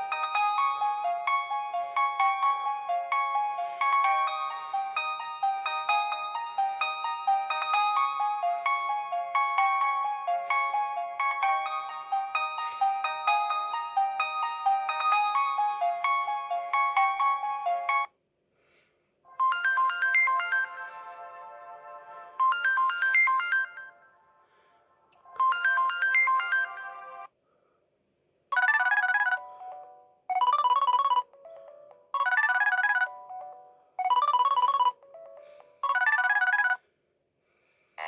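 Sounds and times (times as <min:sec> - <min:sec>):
mobile phone ringtones: 0:19.4 - 0:20.9, 0:25.4 - 0:27.2, 0:28.5 - 0:36.8.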